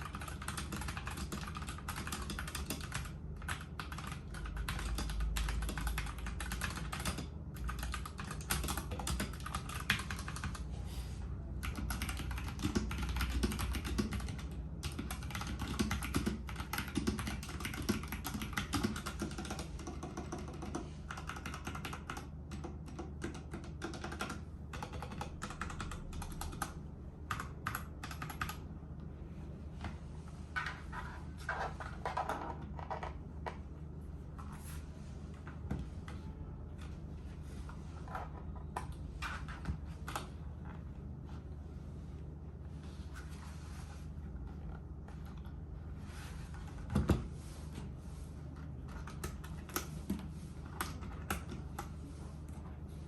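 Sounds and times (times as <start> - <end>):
fast typing on mechanical keyboard: 0.0 - 10.7, 11.6 - 28.6, 48.9 - 51.9.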